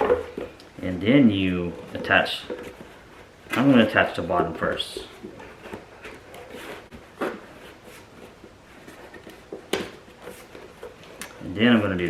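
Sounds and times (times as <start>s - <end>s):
soft rubbing and rustling: 0.0s - 12.0s.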